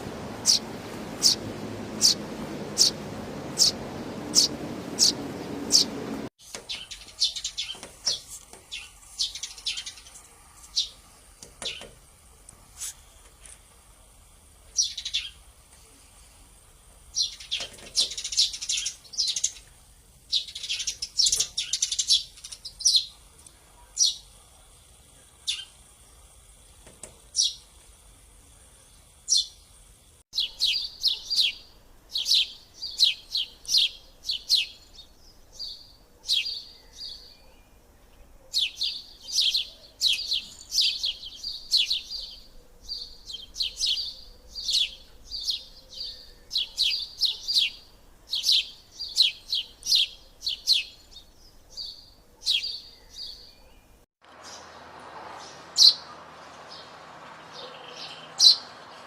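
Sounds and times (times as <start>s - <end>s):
low background hum: 0.0s - 6.3s
sparrows chirping: 0.0s - 12.0s, 14.6s - 15.5s, 17.1s - 26.4s, 27.0s - 27.7s, 28.7s - 59.0s.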